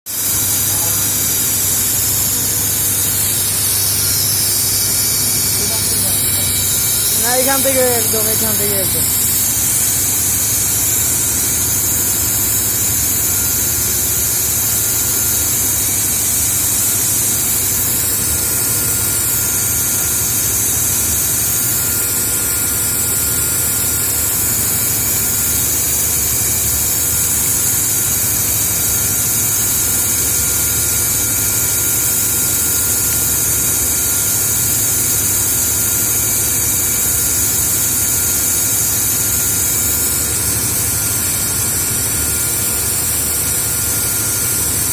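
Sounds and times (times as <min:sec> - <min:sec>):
high air jet hiss: 0:00.1 - 0:44.9
low machine hum: 0:00.2 - 0:30.6.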